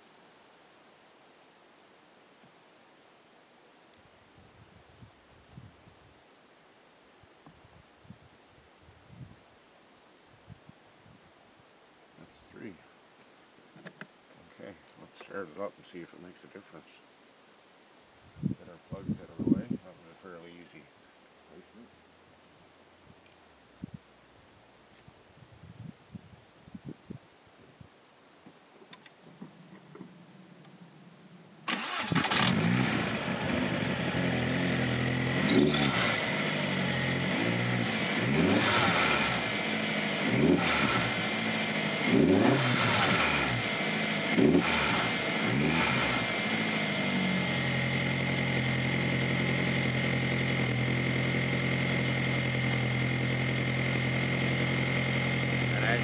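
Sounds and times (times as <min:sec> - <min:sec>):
car engine starting and revving: 0:31.7 - 0:56.0.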